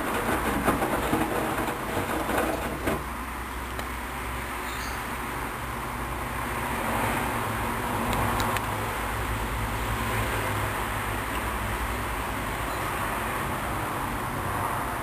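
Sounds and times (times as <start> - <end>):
washing machine humming: 0.0 - 3.7.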